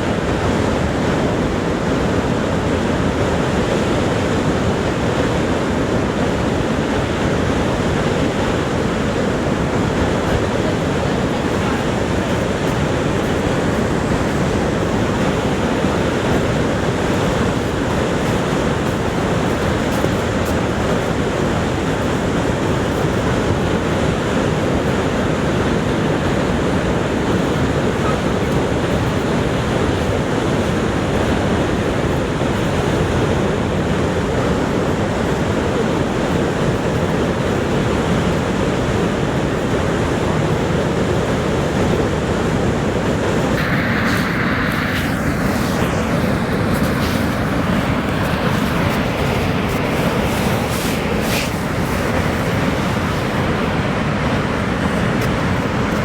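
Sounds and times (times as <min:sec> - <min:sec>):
waterfall rushing: 0:43.2 - 0:56.0.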